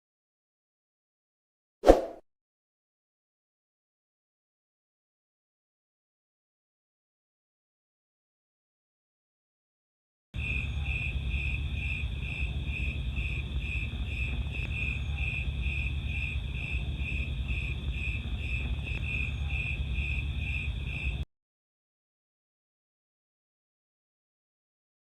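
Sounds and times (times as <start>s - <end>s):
crickets chirping: 10.4s - 21.2s
steady low rumble: 10.4s - 21.2s.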